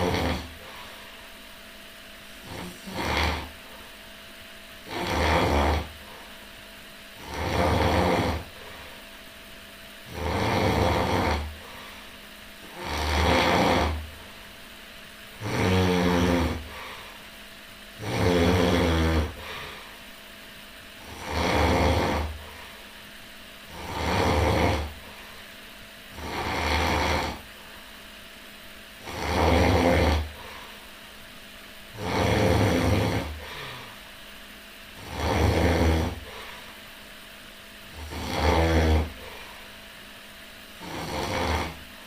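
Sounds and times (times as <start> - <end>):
person snoring loudly: 0.0 - 0.9, 2.4 - 3.7, 4.8 - 6.2, 7.2 - 8.8, 10.0 - 11.9, 12.6 - 14.1, 15.4 - 17.1, 18.0 - 19.8, 21.0 - 22.7, 23.7 - 25.2, 26.1 - 27.5, 29.0 - 30.7, 31.9 - 34.0, 35.0 - 36.6, 37.9 - 39.6, 40.8 - 41.9.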